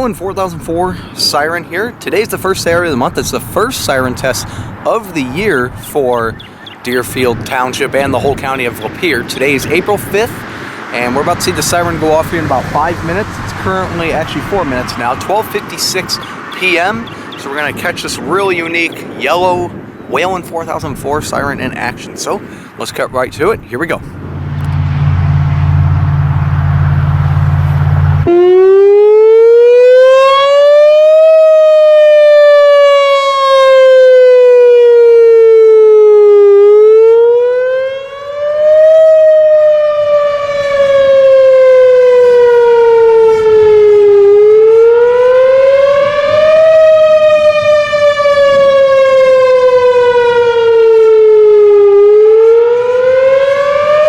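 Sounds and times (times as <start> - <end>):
warning siren wailing: 0.0 - 20.6, 24.2 - 54.0
loud low rumbling noise: 9.3 - 18.4, 23.6 - 28.3.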